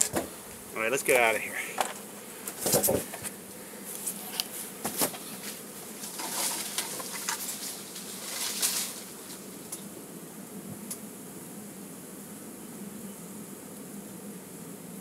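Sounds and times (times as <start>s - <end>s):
honey bees buzzing: 0.0s - 15.0s
handling knocks and rustles: 1.8s - 3.3s, 4.0s - 9.4s.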